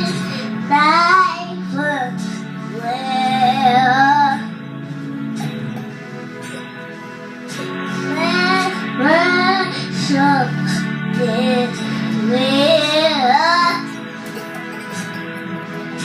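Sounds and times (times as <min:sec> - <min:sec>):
child singing: 0:00.0 - 0:04.5, 0:08.1 - 0:14.0
worship music with guitar: 0:00.0 - 0:16.0.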